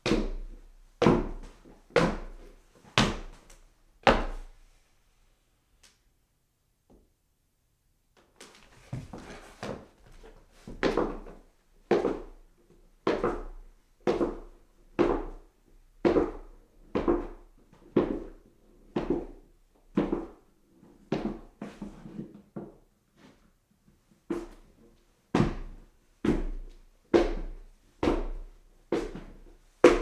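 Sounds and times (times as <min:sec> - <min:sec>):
footsteps climbing stairs: 0:08.2 - 0:11.4.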